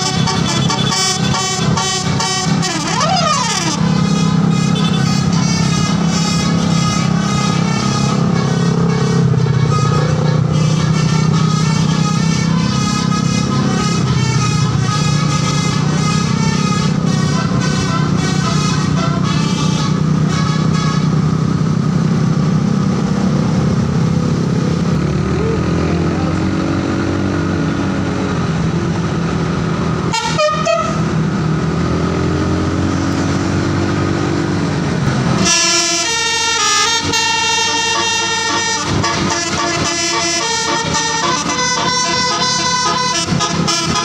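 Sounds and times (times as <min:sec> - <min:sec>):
musical air horns playing tune: 0:00.0 - 0:21.4, 0:30.1 - 0:31.1, 0:35.2 - 0:44.0
vehicle engine revving: 0:00.0 - 0:44.0.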